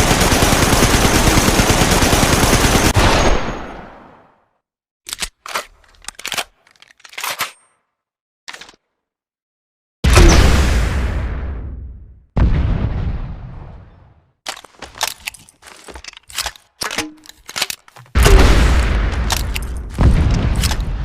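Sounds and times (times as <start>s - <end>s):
metallic clicks of weapon reloading: 5.1s - 7.9s, 8.5s - 8.9s, 14.5s - 18.5s, 19.1s - 20.9s
grenade launcher booms: 10.0s - 14.1s, 18.2s - 21.0s.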